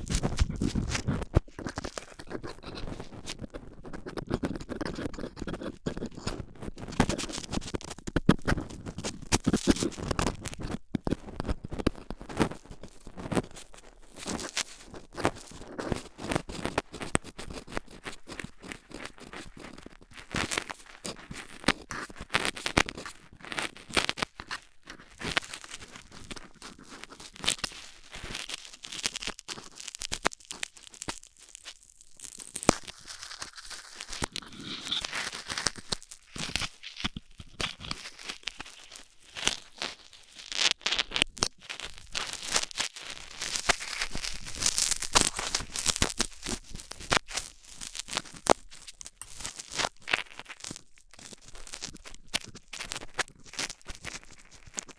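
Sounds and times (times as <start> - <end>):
metal pick scraping inside ear: 0.0 - 10.7, 32.8 - 39.0.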